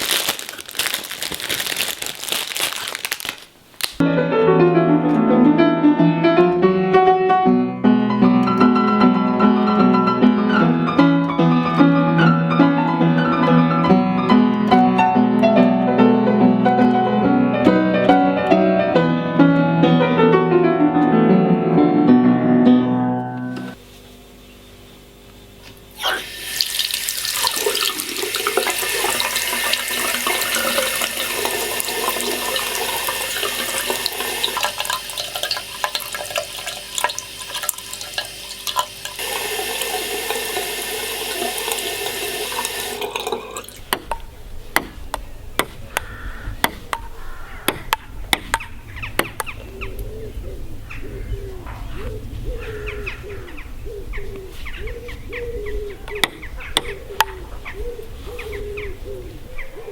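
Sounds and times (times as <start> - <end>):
running water rushing: 26.0 - 44.2.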